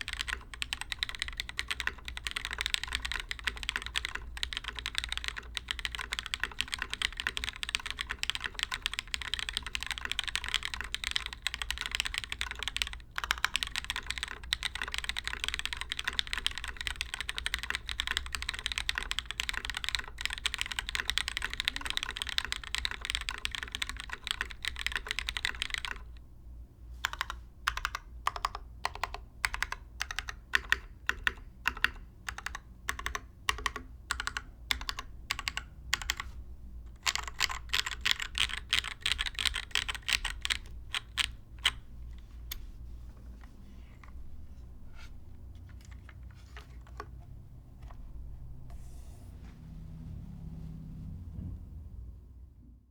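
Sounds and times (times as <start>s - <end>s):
mechanical keyboard typing: 0.0s - 26.2s, 27.0s - 41.9s.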